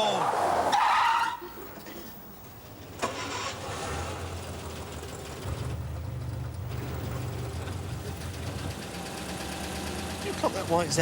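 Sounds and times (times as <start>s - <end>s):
car engine rumbling: 2.7s - 11.0s.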